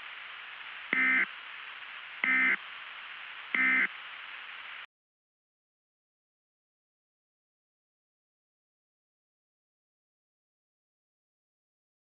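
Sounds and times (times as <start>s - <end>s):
static hiss: 0.0s - 4.9s
short digital data bursts: 1.0s - 1.3s, 2.2s - 2.6s, 3.6s - 3.9s.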